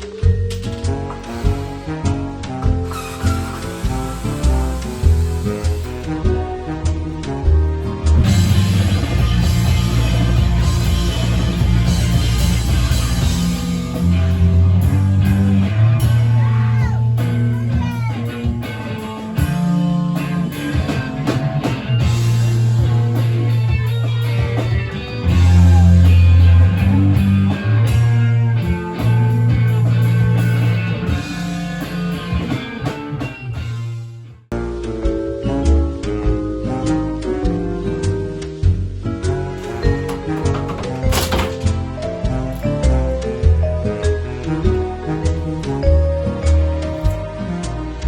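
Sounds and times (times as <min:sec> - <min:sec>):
rock song with singing: 0:08.5 - 0:28.3.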